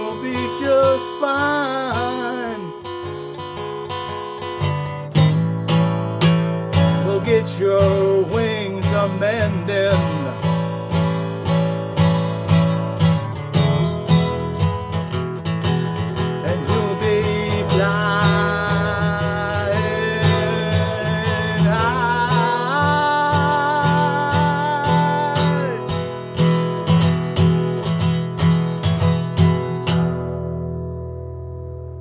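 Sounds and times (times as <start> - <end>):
acoustic guitar strumming: 0.0 - 32.0.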